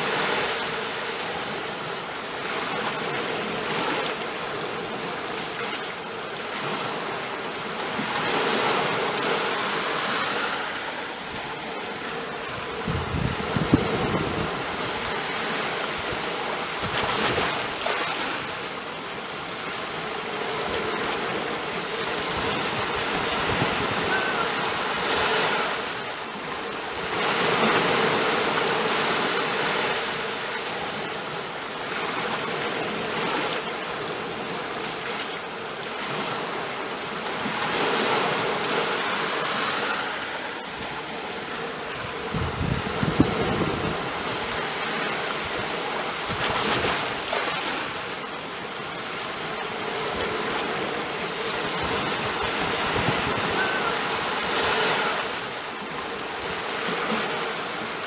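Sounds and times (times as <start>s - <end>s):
sea waves washing onto shore: 0.0s - 58.0s.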